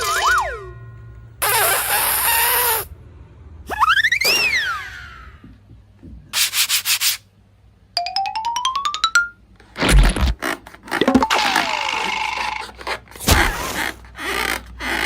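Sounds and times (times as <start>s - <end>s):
sliding whistle: 1.4s - 2.9s.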